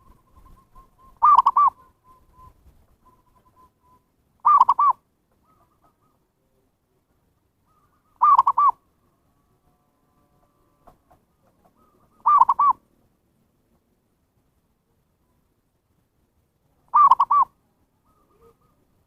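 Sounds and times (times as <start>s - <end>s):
dove cooing: 0.0s - 2.5s, 4.4s - 6.6s, 7.6s - 12.8s, 16.9s - 18.9s.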